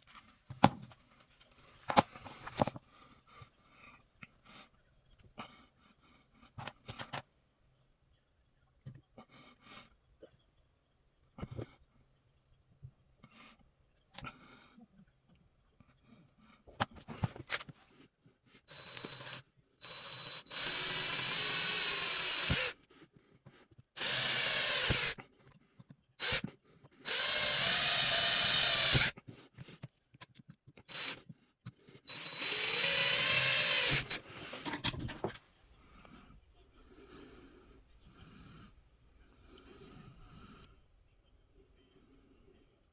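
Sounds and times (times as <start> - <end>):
electric power tool motor: 18.7 - 22.8, 24.0 - 25.2, 27.0 - 29.1, 30.9 - 31.2, 32.1 - 34.3.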